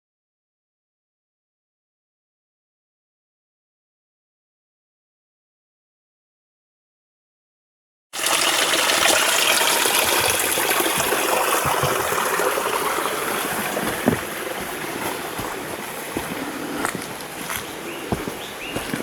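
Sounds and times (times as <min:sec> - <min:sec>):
creek running over rocks: 0:08.2 - 0:19.0.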